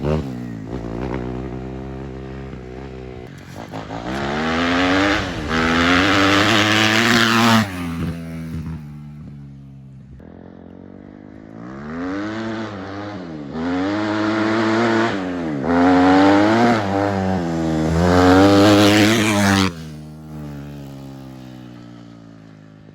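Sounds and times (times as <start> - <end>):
motocross engine revving: 0.0 - 10.1, 11.5 - 21.6.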